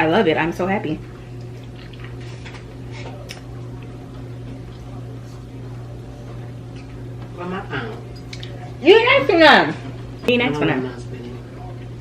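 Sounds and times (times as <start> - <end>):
steady low hum: 0.0 - 12.0
wet eating noises: 1.2 - 4.9.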